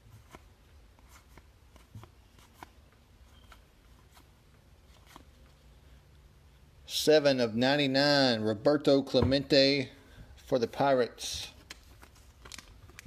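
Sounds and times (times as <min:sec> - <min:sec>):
trading cards being flipped through: 0:00.2 - 0:05.6, 0:11.6 - 0:13.0.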